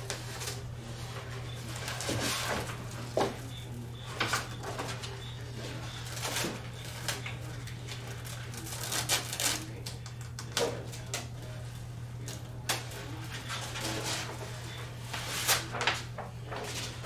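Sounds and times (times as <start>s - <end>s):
steady low hum: 0.0s - 17.0s
vinyl film taps and crinkles: 6.0s - 11.5s.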